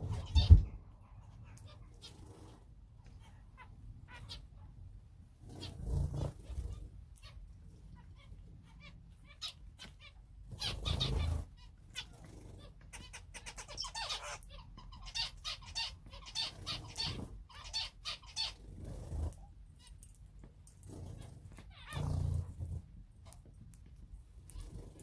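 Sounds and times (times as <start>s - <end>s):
cage birds chirping: 0.0s - 25.0s.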